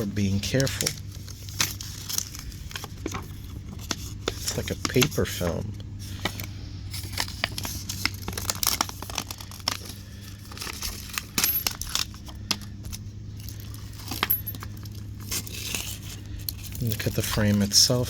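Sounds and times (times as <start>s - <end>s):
film peeling: 0.0s - 14.0s
low steady hum: 0.0s - 18.0s.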